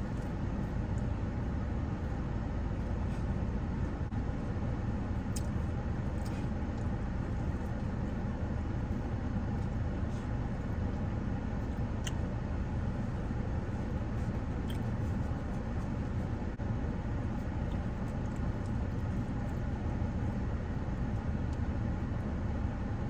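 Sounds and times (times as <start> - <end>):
car engine rumble inside cabin: 0.0 - 23.0.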